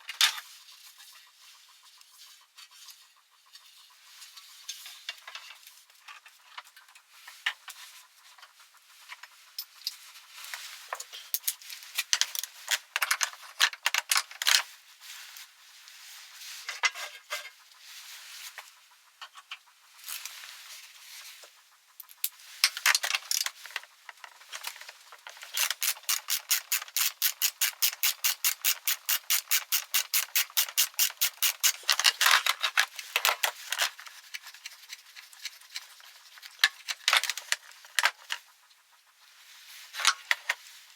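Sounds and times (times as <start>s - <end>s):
hand tools clicking on metal: 22.0s - 38.4s
fast run of clicks: 22.0s - 38.7s.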